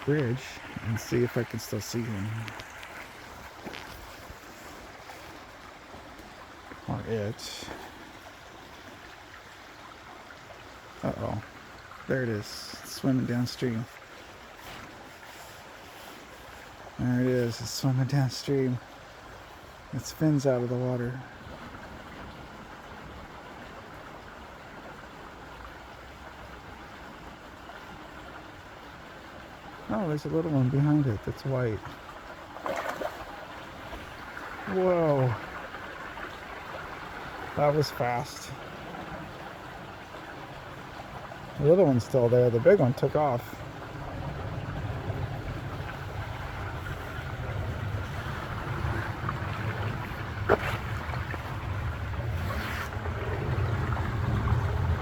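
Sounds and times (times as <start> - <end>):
stream flowing: 0.0 - 55.0
wind rumble on microphone: 43.5 - 55.0.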